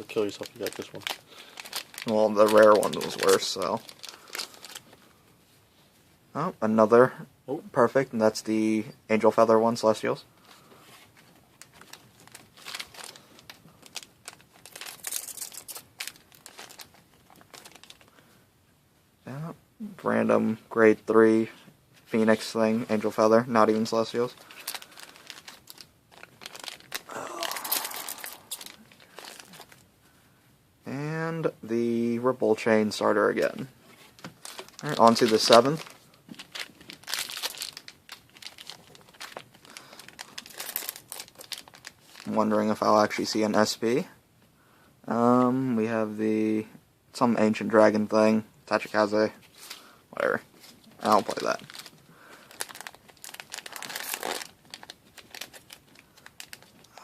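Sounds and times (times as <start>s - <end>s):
card pack crinkling and rustling: 0.0s - 5.0s, 11.0s - 18.2s, 23.0s - 29.9s, 33.4s - 43.6s, 49.5s - 57.0s.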